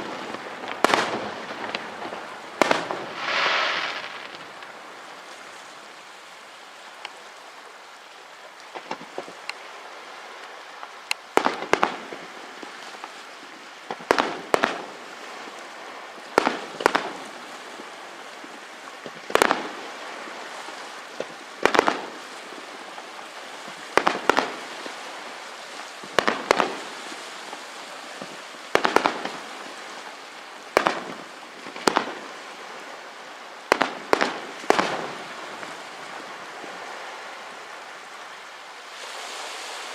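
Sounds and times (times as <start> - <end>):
firework shells bursting: 0.0 - 4.8, 28.2 - 29.4, 30.8 - 32.2, 33.7 - 35.7
steady hiss: 0.0 - 39.9
faint firework pops: 0.6 - 4.7, 28.2 - 29.4, 30.8 - 32.2, 33.7 - 35.7.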